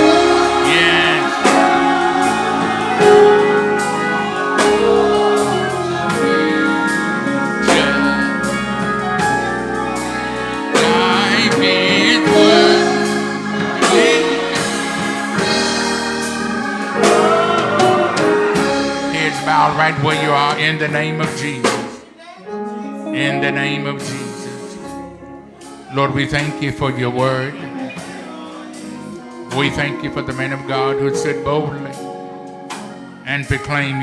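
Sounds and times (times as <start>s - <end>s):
gospel band playing: 0.0s - 34.0s
voices singing: 0.0s - 34.0s.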